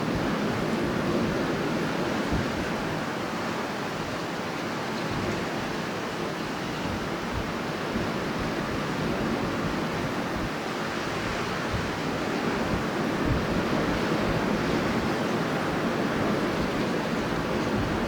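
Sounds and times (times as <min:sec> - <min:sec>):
low wind buffets: 0:00.0 - 0:18.0
strong wind blowing: 0:00.0 - 0:18.0.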